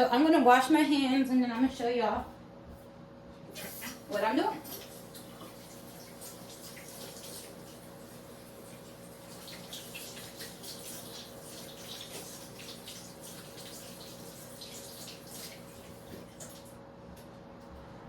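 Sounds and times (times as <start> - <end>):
tap water running: 3.5 - 16.8
hands washing under splashing water: 3.6 - 16.7.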